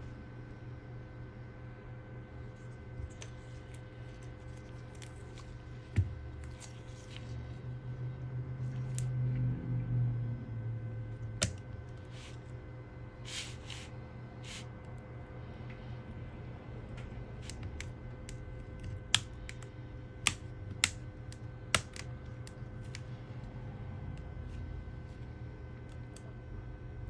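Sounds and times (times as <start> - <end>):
steady low hum: 0.0 - 27.0
sharp plastic and metal clicks: 17.4 - 23.0.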